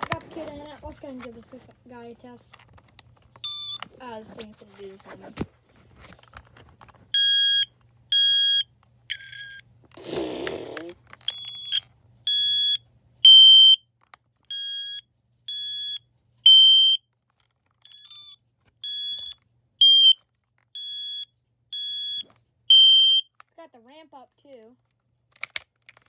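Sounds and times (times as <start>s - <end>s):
smoke alarm beeping: 3.4s - 3.8s, 7.2s - 9.6s, 11.3s - 13.8s, 14.5s - 17.0s, 17.9s - 20.2s, 20.8s - 23.3s.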